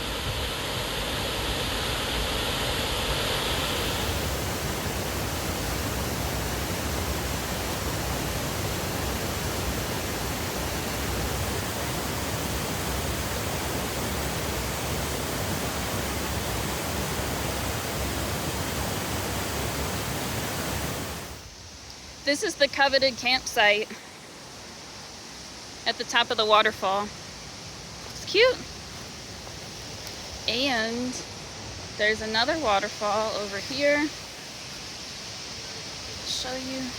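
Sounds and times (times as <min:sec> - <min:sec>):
waterfall roaring: 0:00.0 - 0:21.4.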